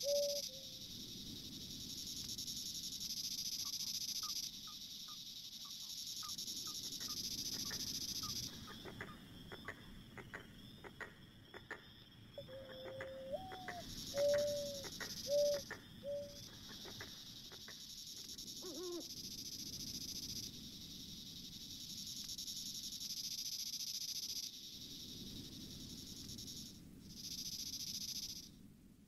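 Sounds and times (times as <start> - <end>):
owl hooting: 0.0 - 0.7, 12.4 - 17.8, 18.6 - 19.1
crickets chirping: 0.0 - 29.0.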